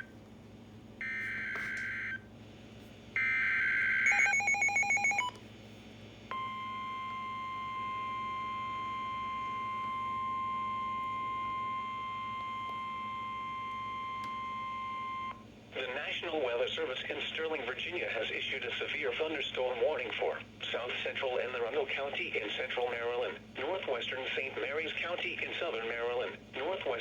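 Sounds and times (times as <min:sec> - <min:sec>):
steady warning alarm tone: 0:01.0 - 0:02.2, 0:03.2 - 0:05.3, 0:06.3 - 0:15.4.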